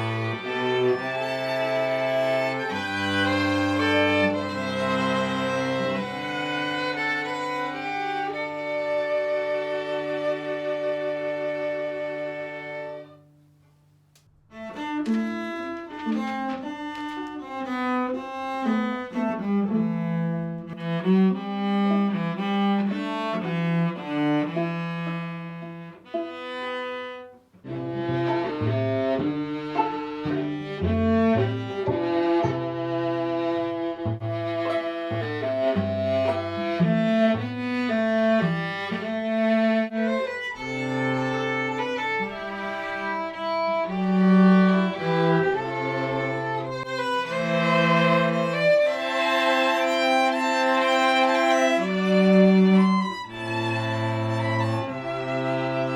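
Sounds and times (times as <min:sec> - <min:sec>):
string quartet playing: 0:00.0 - 0:13.6, 0:14.5 - 0:55.9
low cello notes: 0:00.0 - 0:55.9.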